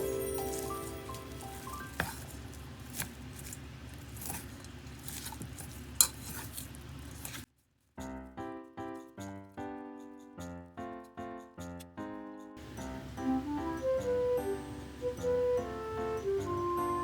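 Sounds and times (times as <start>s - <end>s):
utensils and dishes clinking: 0.0s - 7.4s
low room noise: 0.0s - 8.9s, 12.6s - 17.0s.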